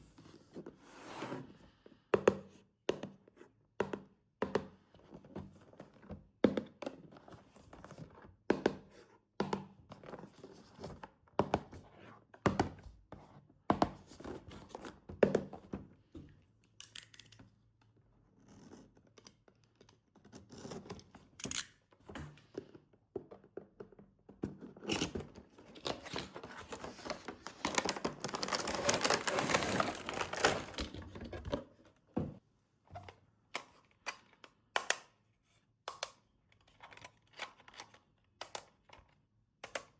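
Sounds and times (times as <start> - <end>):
packaging tearing and crinkling: 25.8 - 31.0.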